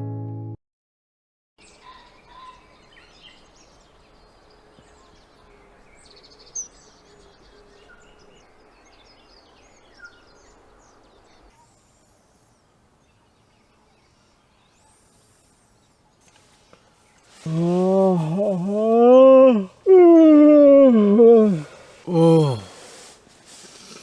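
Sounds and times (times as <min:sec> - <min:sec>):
faint bird chirps: 0:01.6 - 0:18.8.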